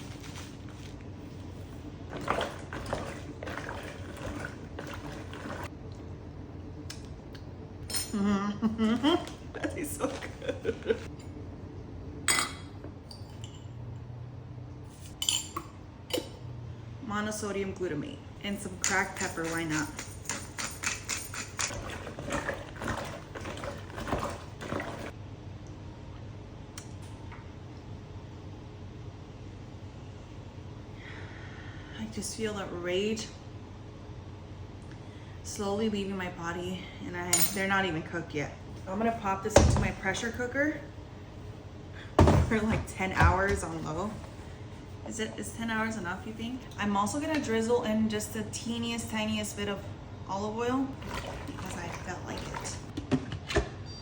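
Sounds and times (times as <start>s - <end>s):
water sloshing in a pot: 0.0s - 6.2s, 8.8s - 11.1s, 18.6s - 25.2s, 50.9s - 53.7s.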